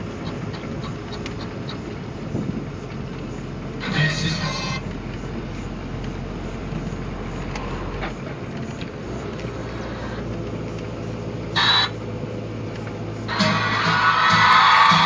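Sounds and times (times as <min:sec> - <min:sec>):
vehicle rumbling: 0:00.0 - 0:15.0
music: 0:13.3 - 0:15.0.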